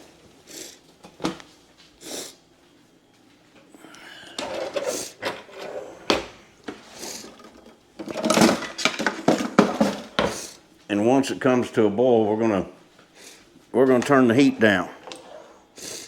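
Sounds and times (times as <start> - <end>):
kitchen knocks and clatters: 4.3 - 10.6.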